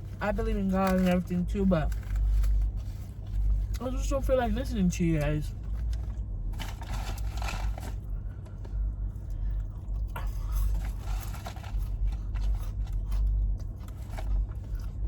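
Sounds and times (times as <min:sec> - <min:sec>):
crackles and scrapes: 0:00.0 - 0:04.6, 0:05.2 - 0:15.0
steady low hum: 0:00.0 - 0:15.0
person chewing: 0:05.6 - 0:15.0.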